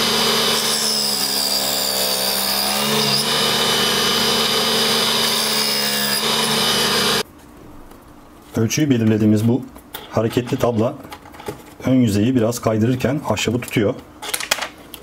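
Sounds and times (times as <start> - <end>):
saw blade cutting wood: 0.0 - 7.2
table saw whining: 0.0 - 7.2.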